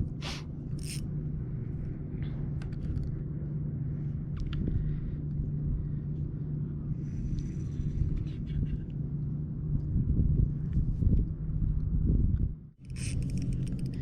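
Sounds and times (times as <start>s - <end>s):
low steady rumble: 0.0s - 14.0s
fishing tackle clicks: 0.8s - 1.0s, 12.9s - 14.0s.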